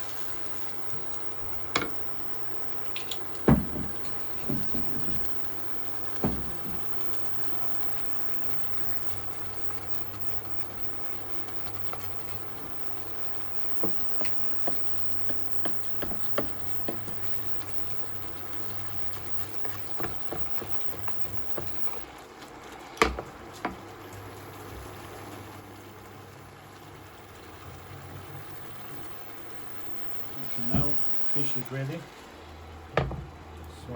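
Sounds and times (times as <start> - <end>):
food simmering and bubbling: 0.0 - 33.9.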